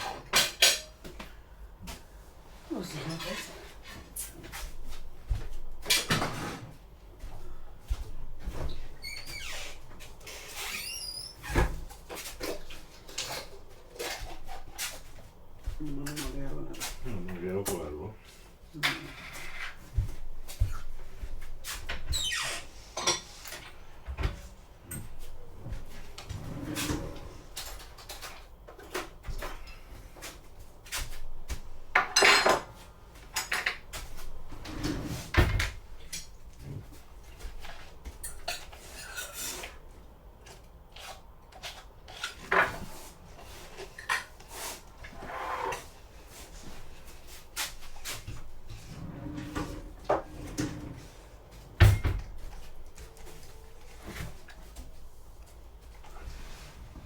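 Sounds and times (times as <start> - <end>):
dishes and cutlery clinking: 0.3 - 1.0, 23.0 - 23.6, 32.0 - 32.7, 38.2 - 39.8
dishes clattering: 0.3 - 1.0, 32.0 - 32.7.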